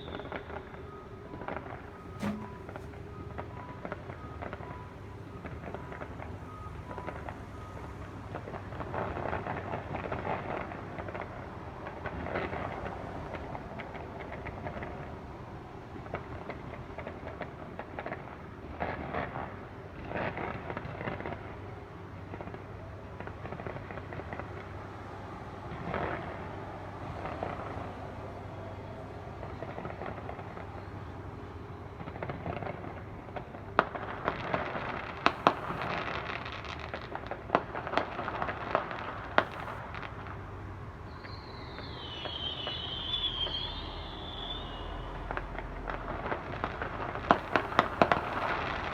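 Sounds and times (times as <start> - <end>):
fireworks crackling: 1.4 - 3.0, 32.0 - 48.9
fireworks bangs: 1.4 - 3.1, 33.8 - 40.4, 41.1 - 48.9.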